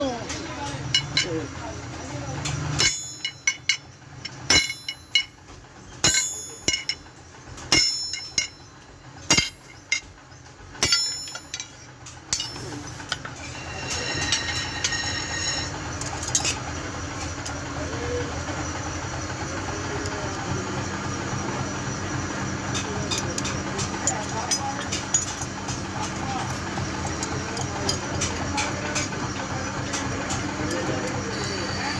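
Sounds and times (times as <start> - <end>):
steady machine noise: 0.0 - 31.9
hand hammer striking steel: 2.8 - 3.8, 4.5 - 5.3, 6.0 - 7.0, 7.7 - 8.6, 9.3 - 10.1, 10.8 - 11.7
light metallic clinks: 6.0 - 7.1, 10.8 - 16.6.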